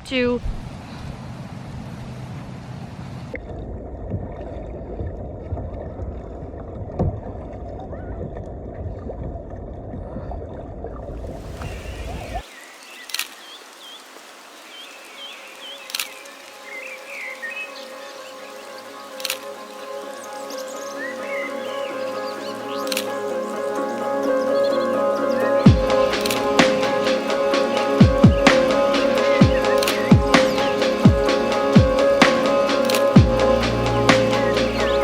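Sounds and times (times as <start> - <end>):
muffled water rushing and sloshing: 0.0 - 35.0
birds chirping: 11.5 - 35.0.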